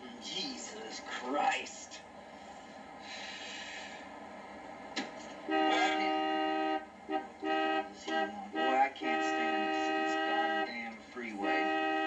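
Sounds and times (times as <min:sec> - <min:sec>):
car horn honking: 0:05.5 - 0:12.0.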